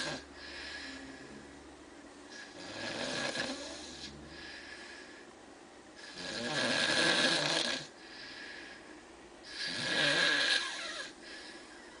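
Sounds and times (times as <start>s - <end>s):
man snoring: 0.0s - 0.3s, 2.4s - 4.2s, 6.0s - 7.9s, 9.5s - 11.2s
quiet breathing: 0.0s - 2.7s, 3.5s - 6.2s, 7.6s - 9.9s, 10.6s - 12.0s.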